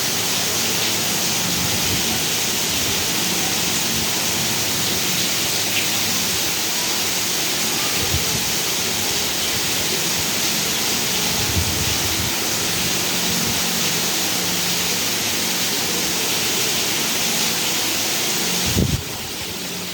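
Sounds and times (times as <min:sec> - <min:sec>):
heavy rain falling: 0:00.0 - 0:19.9.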